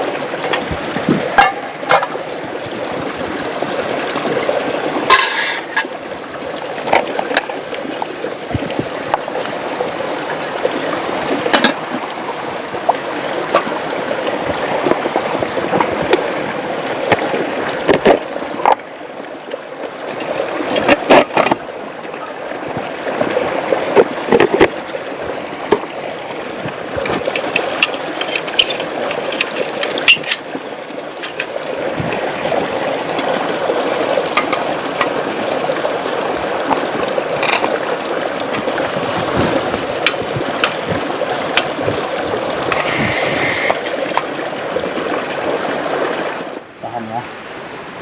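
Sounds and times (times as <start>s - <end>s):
river water flowing: 0.0s - 48.0s
brief high-pitched call: 42.7s - 43.8s.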